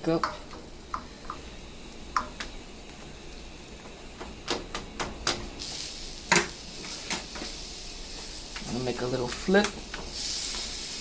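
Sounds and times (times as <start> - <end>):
clicks and taps at skillet: 0.0 - 1.5, 2.1 - 3.1, 3.8 - 5.5, 6.3 - 7.6, 9.3 - 10.8
food sizzling: 0.0 - 11.0.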